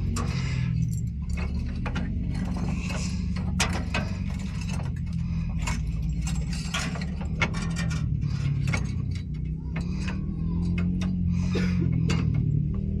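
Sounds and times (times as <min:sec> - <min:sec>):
hand tools clanking on metal: 0:00.0 - 0:12.7
steady low hum: 0:00.0 - 0:13.0.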